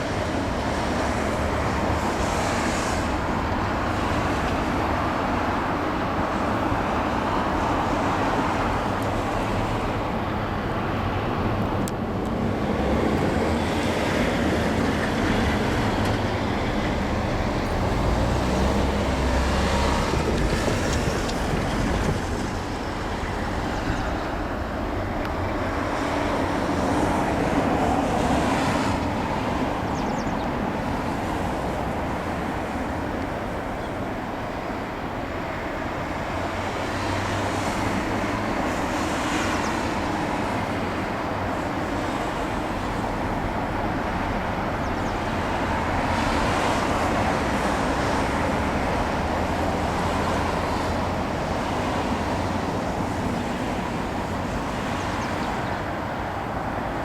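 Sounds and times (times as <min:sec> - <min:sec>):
road traffic rumble: 0:00.0 - 0:57.0.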